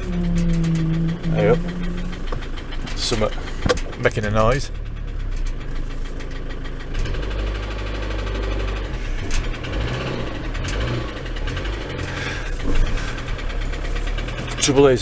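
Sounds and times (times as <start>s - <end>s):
rapid knocking tick: 0.0s - 8.0s
van engine idling: 0.0s - 15.0s.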